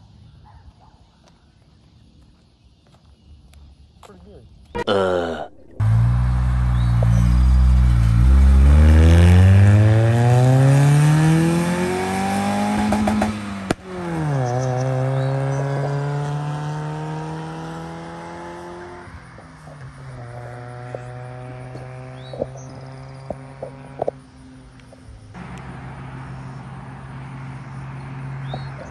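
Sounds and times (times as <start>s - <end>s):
pickup truck engine accelerating: 5.8s - 19.4s.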